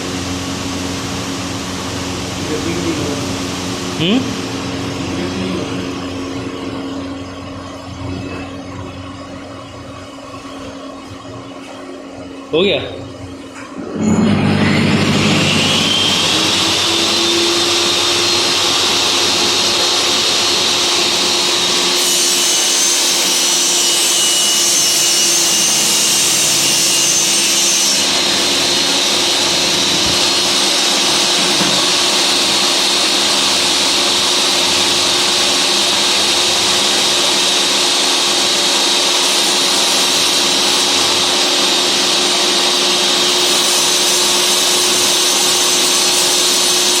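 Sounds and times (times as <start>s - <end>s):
table saw motor whining: 13.7s - 47.0s
spinning saw blade rushing: 13.8s - 47.0s.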